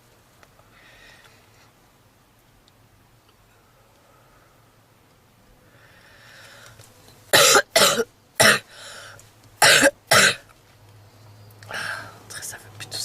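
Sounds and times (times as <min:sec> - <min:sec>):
woman breathing in: 0:05.7 - 0:06.8, 0:08.7 - 0:09.2
woman's harsh cough: 0:07.4 - 0:08.7, 0:09.6 - 0:10.4.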